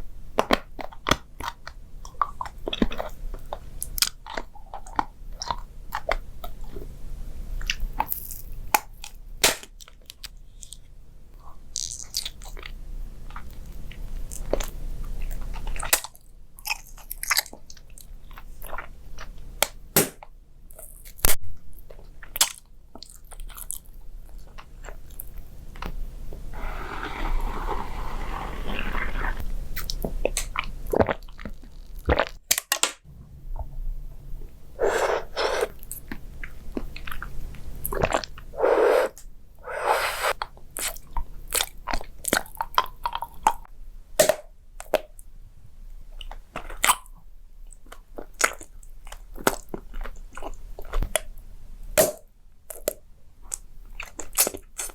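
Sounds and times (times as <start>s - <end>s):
person chewing crunchy food: 0.8s - 6.8s, 26.6s - 32.4s, 34.8s - 43.7s, 47.8s - 51.3s.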